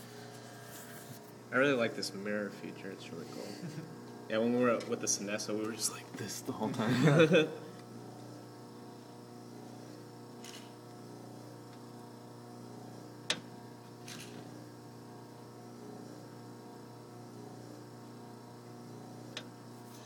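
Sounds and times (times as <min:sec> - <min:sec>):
espresso machine pump humming: 0:00.0 - 0:20.0.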